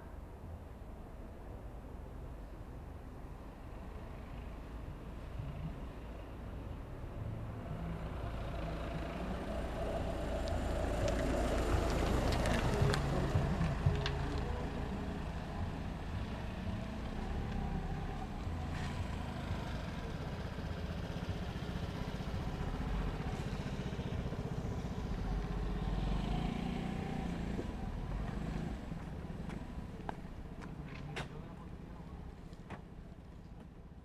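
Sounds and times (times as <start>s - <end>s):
traffic rumble: 0.0s - 34.0s
vehicle passing: 7.3s - 32.4s.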